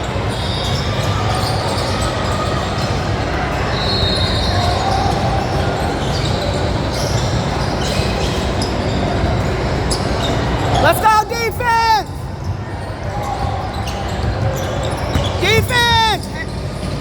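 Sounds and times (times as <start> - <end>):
spectators talking: 8.8 - 17.0
basketball bouncing on court: 13.3 - 17.0.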